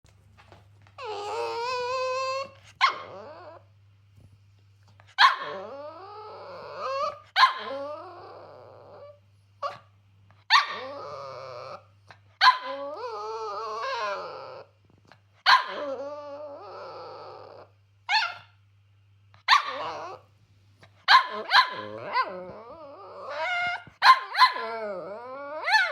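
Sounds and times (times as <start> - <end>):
dog barking and growling: 1.0 - 3.6, 5.0 - 9.8, 10.5 - 14.7, 15.4 - 18.5, 19.4 - 20.2, 20.9 - 25.9.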